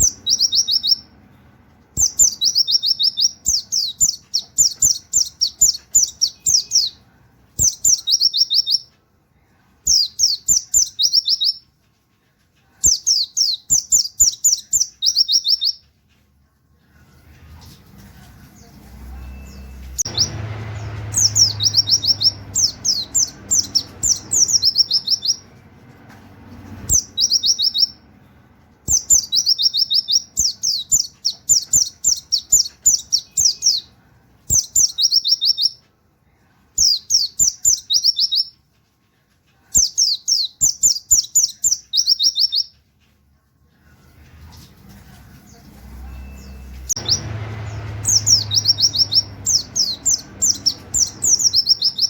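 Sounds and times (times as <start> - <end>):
bird singing whistled notes: 0.0 - 1.1, 2.0 - 7.0, 7.6 - 8.9, 9.9 - 11.6, 12.9 - 15.8, 19.3 - 25.5, 26.9 - 28.0, 28.9 - 33.9, 34.5 - 35.8, 36.8 - 38.6, 39.8 - 42.7, 46.2 - 52.0.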